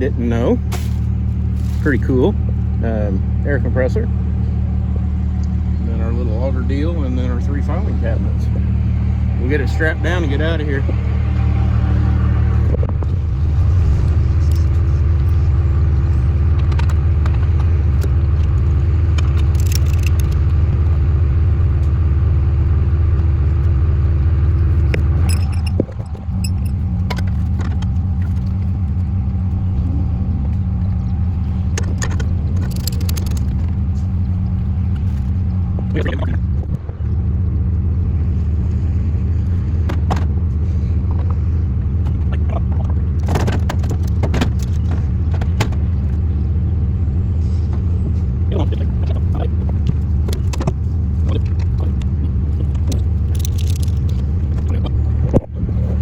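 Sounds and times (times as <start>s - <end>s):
vehicle engine humming: 0.0s - 56.0s
light clicks and rattles: 16.4s - 21.0s, 30.4s - 36.9s, 42.0s - 46.2s, 49.3s - 56.0s.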